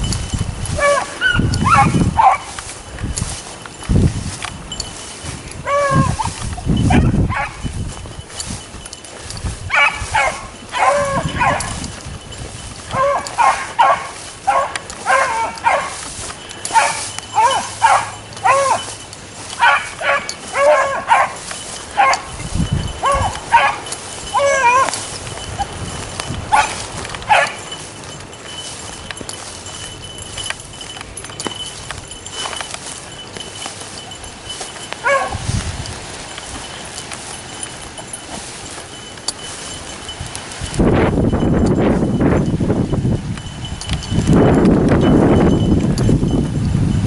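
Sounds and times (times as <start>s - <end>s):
hounds bawling barks: 0.8s - 2.6s, 5.6s - 7.6s, 9.7s - 11.9s, 12.9s - 22.4s, 23.0s - 25.8s, 26.5s - 27.7s, 35.0s - 35.4s.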